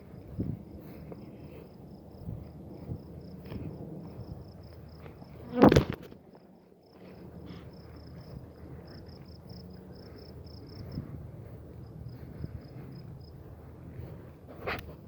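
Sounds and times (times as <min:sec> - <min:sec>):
insect chirping: 0:00.0 - 0:06.0, 0:06.8 - 0:11.1.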